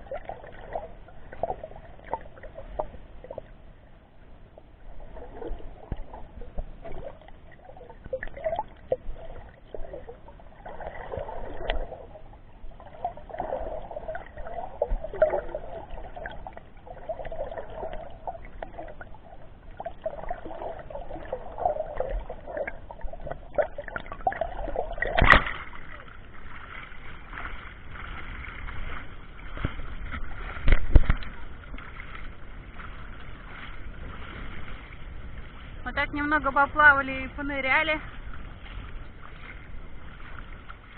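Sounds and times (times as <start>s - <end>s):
muffled water sloshing: 0.0s - 40.9s.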